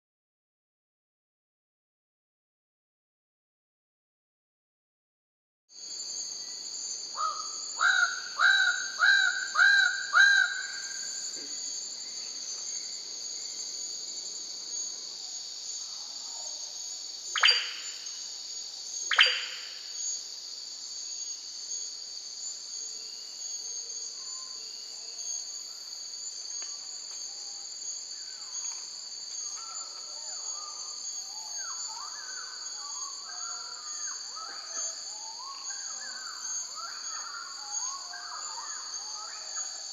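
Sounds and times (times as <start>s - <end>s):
high-pitched insect drone: 5.8s - 39.9s
descending bird whistles: 17.4s - 17.9s, 19.1s - 19.6s
soft chattering bird notes: 17.4s - 17.9s, 19.1s - 19.6s.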